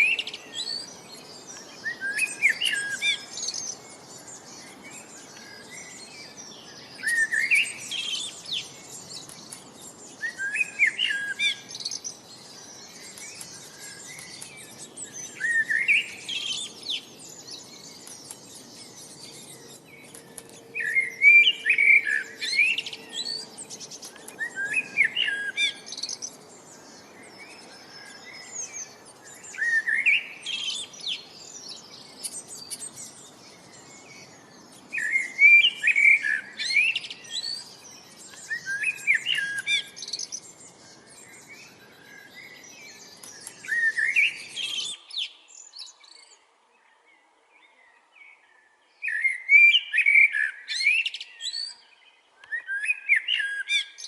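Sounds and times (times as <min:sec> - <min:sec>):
faint bird chirps: 0:00.0 - 0:54.0
songbird singing: 0:00.0 - 0:54.0
steady background hiss: 0:00.0 - 0:54.0.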